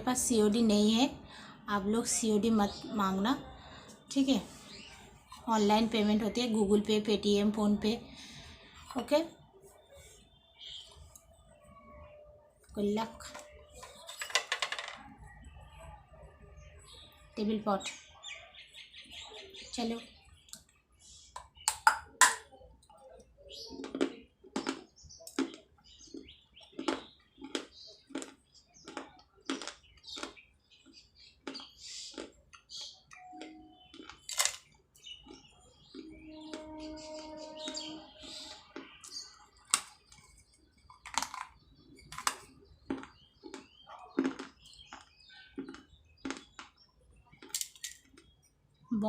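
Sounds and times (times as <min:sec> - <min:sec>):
soft chewing: 0:22.5 - 0:48.9
clay pot crunched by teeth: 0:23.8 - 0:30.4, 0:47.4 - 0:48.2.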